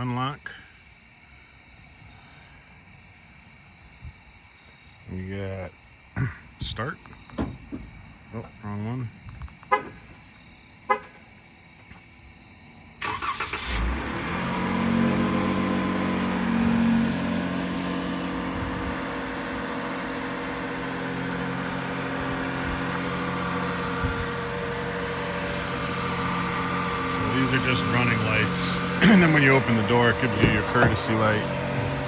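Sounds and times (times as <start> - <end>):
engine starter cranking: 7.0 - 8.1, 13.0 - 14.1, 27.2 - 32.0
pickup engine revving and idling: 13.2 - 32.0.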